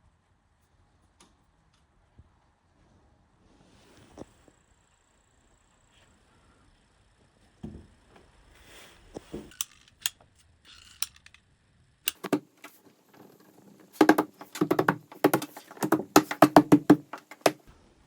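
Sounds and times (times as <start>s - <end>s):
tools clicking: 9.6s - 11.4s, 12.1s - 12.8s
rapid clattering knocks: 12.1s - 17.6s.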